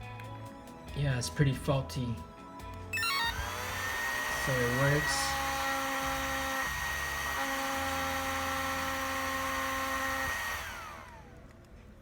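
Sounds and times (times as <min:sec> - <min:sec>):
small fan whining: 0:02.3 - 0:12.0
fan winding down: 0:02.7 - 0:11.7.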